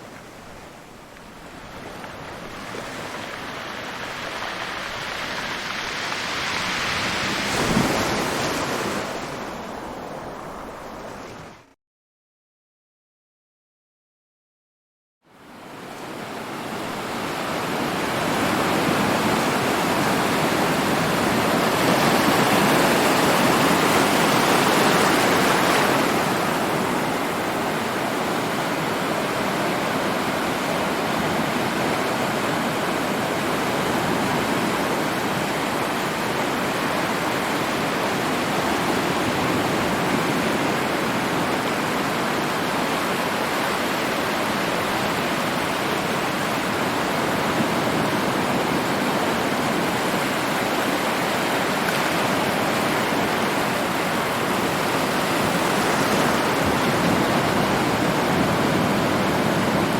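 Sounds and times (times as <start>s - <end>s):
ocean surf breaking: 0.0s - 11.7s, 17.1s - 59.9s.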